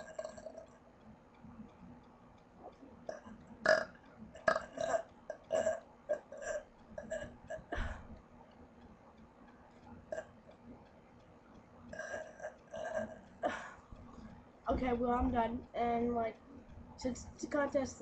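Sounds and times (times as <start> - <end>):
person burping: 0.0 - 0.6, 3.1 - 8.0, 11.9 - 13.8.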